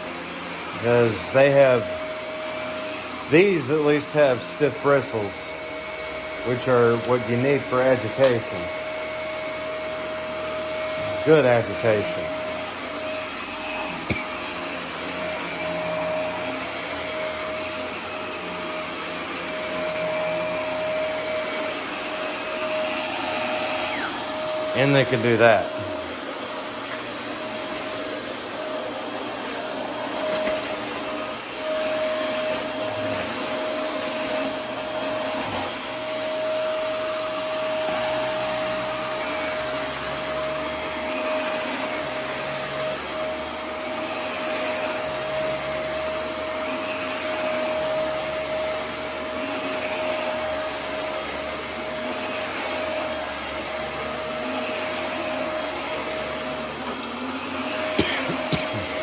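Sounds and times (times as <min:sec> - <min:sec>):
vacuum cleaner running: 0:00.0 - 0:59.0.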